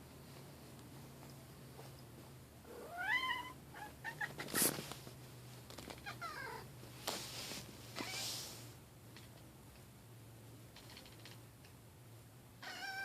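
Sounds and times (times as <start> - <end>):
cat squawking and chirping: 12.6 - 13.0.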